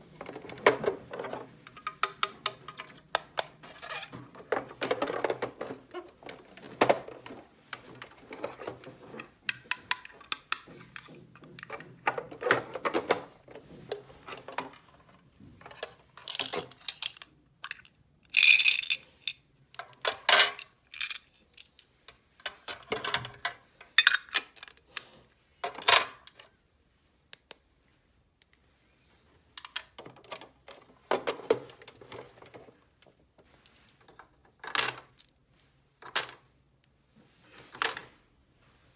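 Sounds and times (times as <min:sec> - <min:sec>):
plastic toy pieces clicking: 0:16.4 - 0:19.0.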